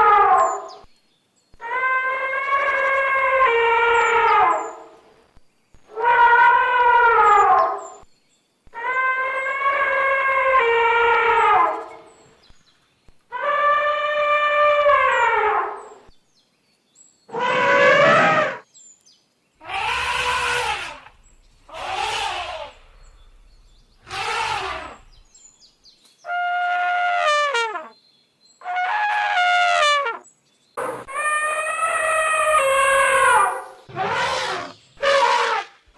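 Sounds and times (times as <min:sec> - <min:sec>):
elephant trumpeting: 0:17.3 - 0:18.6, 0:19.6 - 0:25.2, 0:30.9 - 0:35.8.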